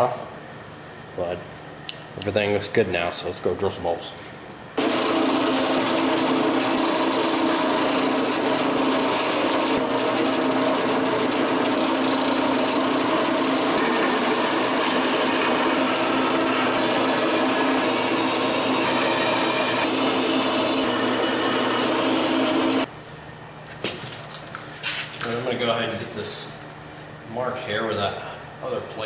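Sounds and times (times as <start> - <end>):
electric drill boring steel: 4.8 - 22.9.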